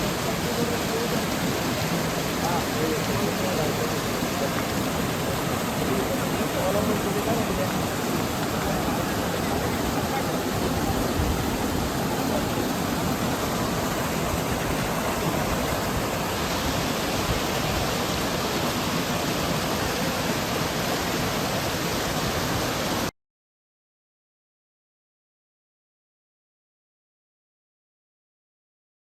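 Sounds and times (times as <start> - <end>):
flowing water rushing: 0.0 - 23.1.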